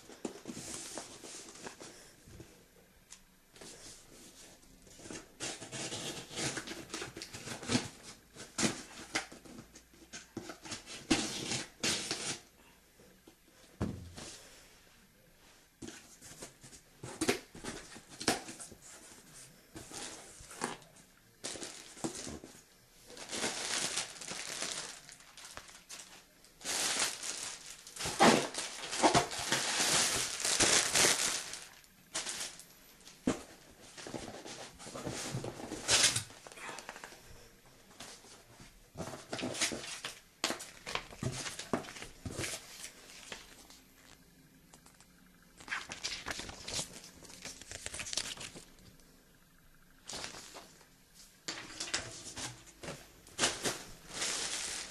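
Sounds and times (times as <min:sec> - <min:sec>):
packaging crinkling and tearing: 0:19.8 - 0:22.5, 0:23.1 - 0:33.2, 0:39.2 - 0:49.0, 0:50.0 - 0:50.8, 0:53.4 - 0:54.9.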